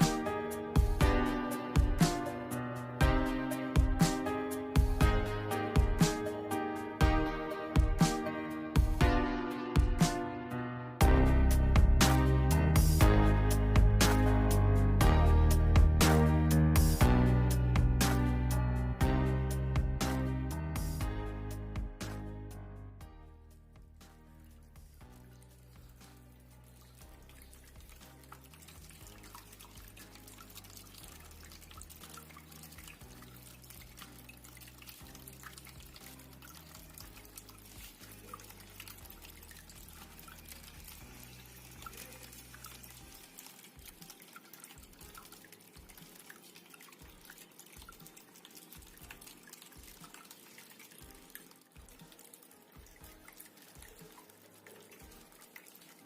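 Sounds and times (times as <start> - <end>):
fountain water trickling: 0.0 - 9.0, 23.6 - 56.0
soft background music: 0.0 - 56.0.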